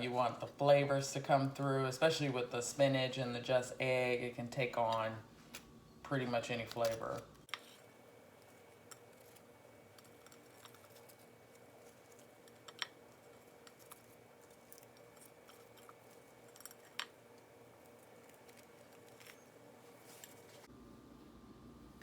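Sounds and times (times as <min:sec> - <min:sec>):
faint sandwich handling sounds: 0:06.8 - 0:20.7.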